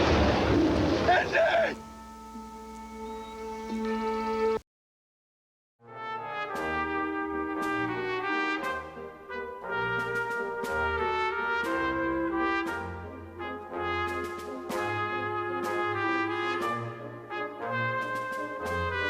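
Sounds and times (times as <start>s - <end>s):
brass-led orchestral music: 5.8s - 19.0s.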